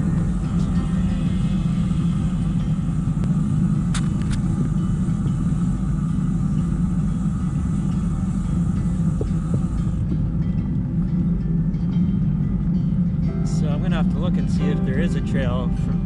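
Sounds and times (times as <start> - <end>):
bicycle tyre noise: 0.0 - 10.2
wind buffeting microphone: 0.0 - 16.0.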